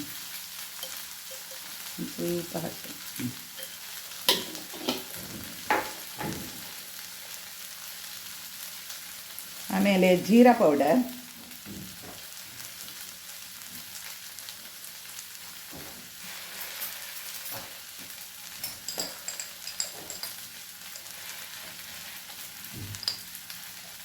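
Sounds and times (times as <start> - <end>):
masala sizzling in a pan: 0.0 - 24.0
spoon scraping a pan: 0.7 - 2.0, 3.4 - 6.6.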